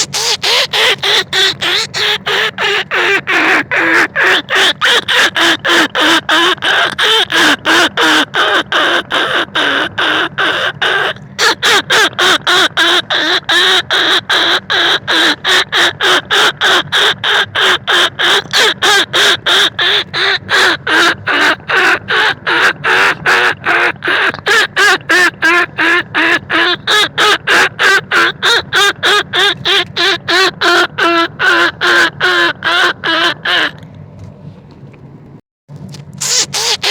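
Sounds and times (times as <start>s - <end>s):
squeaky chirps: 0.0s - 7.3s, 36.2s - 36.9s.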